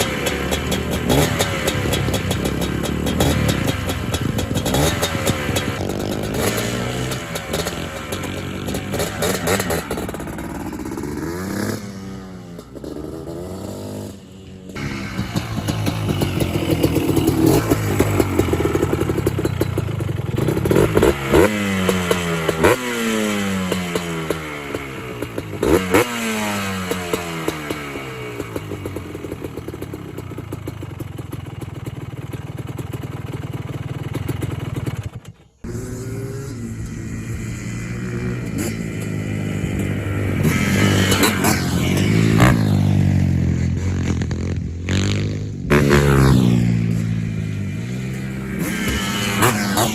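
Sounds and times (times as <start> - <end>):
two-stroke engine revving: 0.0 - 49.9.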